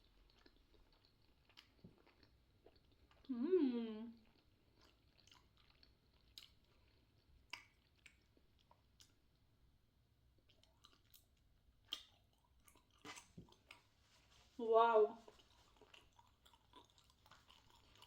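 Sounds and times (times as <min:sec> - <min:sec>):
close-up chewing: 0:00.0 - 0:03.3, 0:04.1 - 0:09.5, 0:10.3 - 0:14.6, 0:15.2 - 0:18.0
mouth clicks and smacks: 0:07.5 - 0:09.2, 0:10.5 - 0:13.9.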